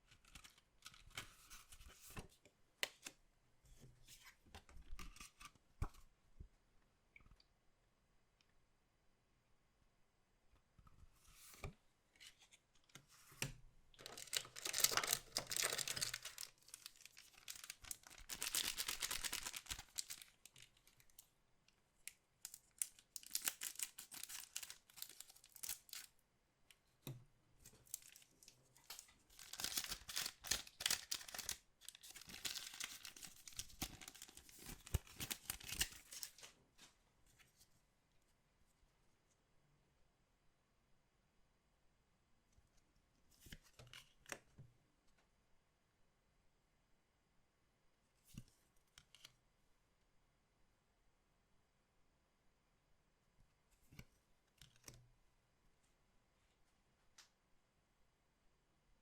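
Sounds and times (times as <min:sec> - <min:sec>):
card wrappers tearing and crinkling: 0:14.0 - 0:20.8, 0:22.8 - 0:26.1, 0:28.8 - 0:36.5.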